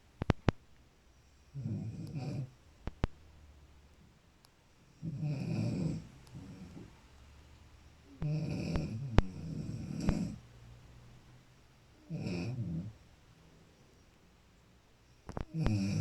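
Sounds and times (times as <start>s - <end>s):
sharp clicks: 0.2s - 0.6s
person snoring: 5.0s - 7.0s, 8.1s - 10.4s, 12.0s - 13.0s, 15.5s - 16.0s.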